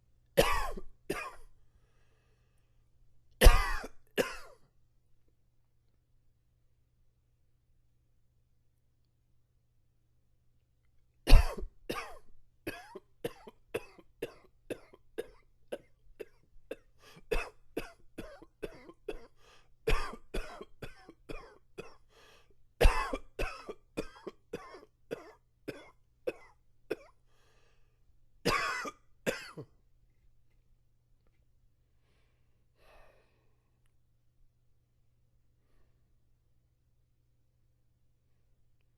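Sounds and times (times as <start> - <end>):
man coughing: 0.4 - 1.5, 3.4 - 4.6, 11.3 - 19.3, 19.9 - 22.0, 22.8 - 27.1, 28.5 - 29.7.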